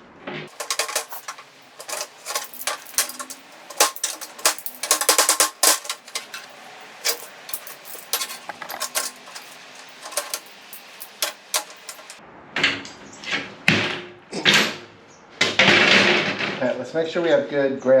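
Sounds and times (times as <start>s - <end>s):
rough metal scraping: 0.5s - 12.2s
sheet metal and tools clinking: 0.5s - 12.2s.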